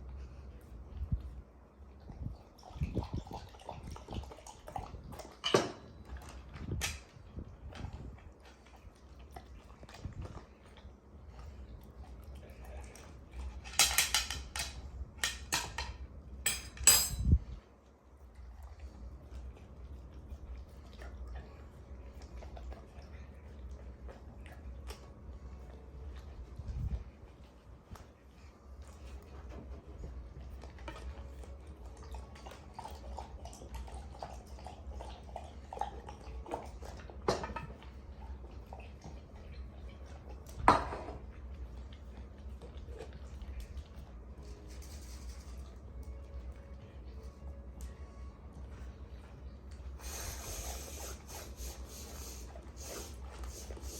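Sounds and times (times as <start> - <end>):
low steady hum: 0.0 - 53.9
dish clinking and clattering: 5.4 - 5.9, 13.6 - 15.9, 16.5 - 17.3
dog eating soft clicks: 17.9 - 50.0.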